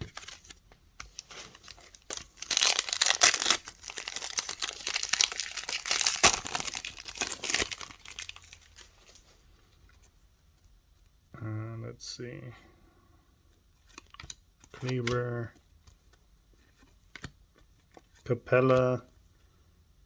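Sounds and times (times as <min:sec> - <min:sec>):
wrapper tearing and crinkling: 0:00.0 - 0:09.2.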